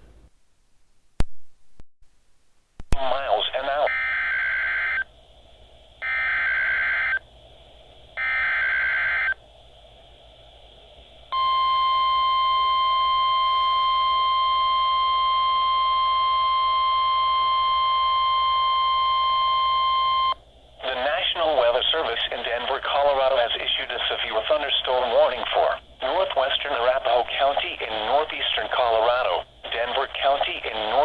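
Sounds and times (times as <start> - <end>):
steady warning alarm tone: 3.9 - 5.1, 6.0 - 7.2, 8.2 - 9.4, 11.4 - 20.4.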